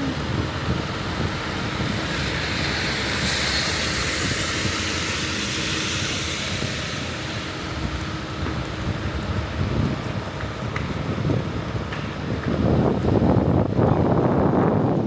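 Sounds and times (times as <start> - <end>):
high hiss of wet tyres: 0.0 - 9.0
low rumble of passing vehicles: 0.0 - 15.0.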